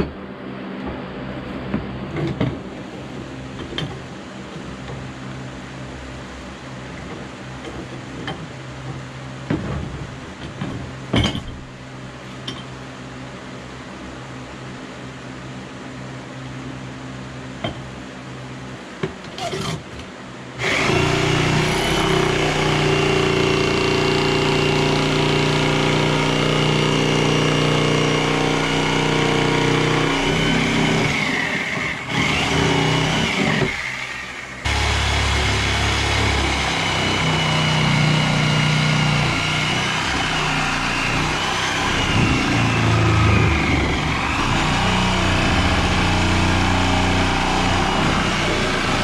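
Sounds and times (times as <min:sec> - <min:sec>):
power tool motor running: 0:20.6 - 0:49.0.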